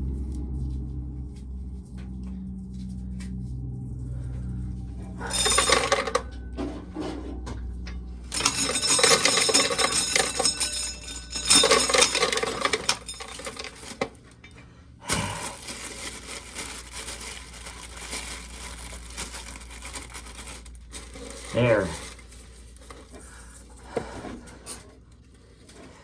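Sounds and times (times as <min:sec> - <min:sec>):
small objects rattling against metal: 0:05.2 - 0:06.3, 0:08.2 - 0:14.5, 0:15.2 - 0:23.2.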